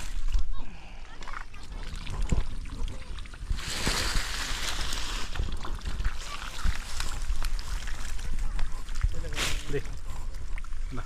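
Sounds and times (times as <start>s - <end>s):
muddy water sloshing and splashing: 0.0s - 11.0s.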